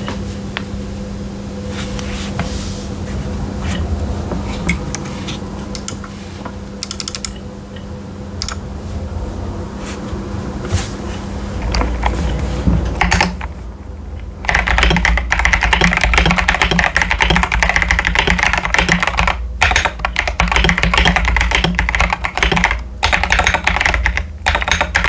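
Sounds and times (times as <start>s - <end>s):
low electrical hum: 0.0s - 25.0s
keyboard clicks: 5.7s - 6.0s, 6.8s - 7.4s, 8.4s - 8.6s, 13.0s - 13.5s, 14.4s - 25.0s.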